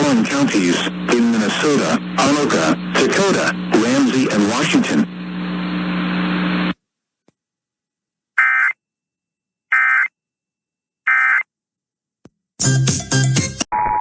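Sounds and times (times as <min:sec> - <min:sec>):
steady hum with hiss: 0:00.0 - 0:06.8.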